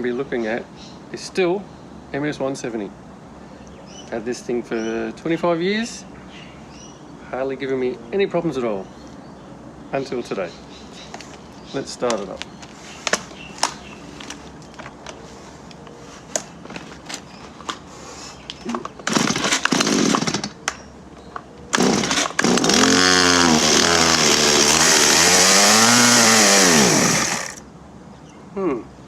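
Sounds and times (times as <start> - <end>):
chainsaw pull-start: 19.0 - 20.6, 21.7 - 27.6
chainsaw running loudly: 19.1 - 20.5, 21.8 - 27.6.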